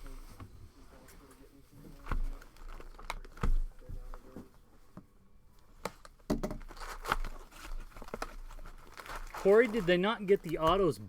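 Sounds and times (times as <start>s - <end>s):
cards tapping and rustling: 1.8s - 5.1s, 5.7s - 11.0s.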